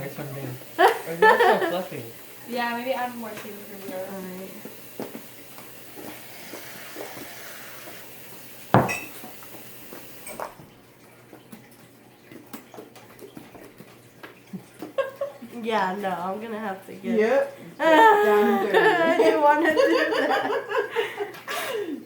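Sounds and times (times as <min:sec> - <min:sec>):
sharp knock on table: 0:08.8 - 0:09.0
bowls and utensils clicking: 0:08.8 - 0:09.5.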